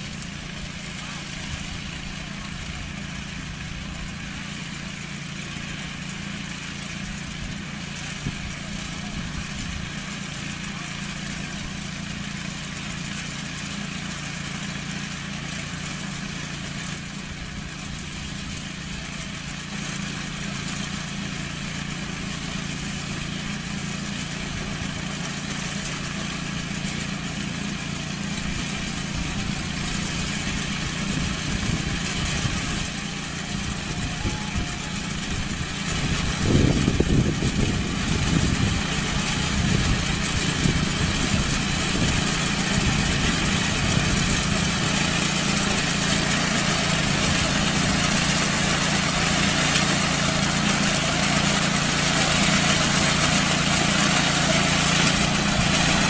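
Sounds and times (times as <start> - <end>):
farm machine engine running: 0.0 - 56.0.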